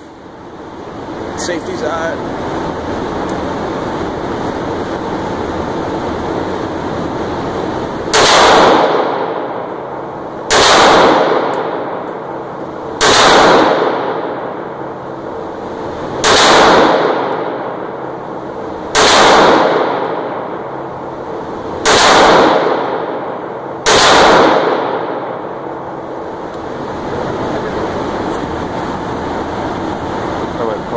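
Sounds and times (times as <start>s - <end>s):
steady background rumble: 0.0s - 30.9s
pistol shots ringing out: 8.1s - 9.7s, 10.4s - 12.3s, 12.9s - 14.8s, 16.2s - 18.1s, 18.9s - 20.9s, 21.8s - 25.6s.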